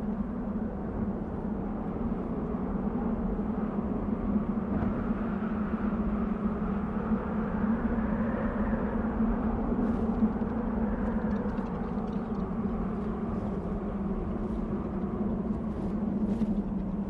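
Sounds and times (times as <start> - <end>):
wind blowing steadily: 0.0 - 17.0
faint ticks: 10.1 - 13.0.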